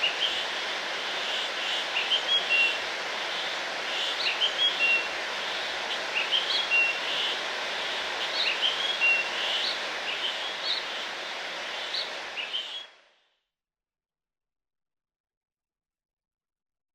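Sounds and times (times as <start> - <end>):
steady background hiss: 0.0 - 13.2
birds chirping: 4.0 - 12.9.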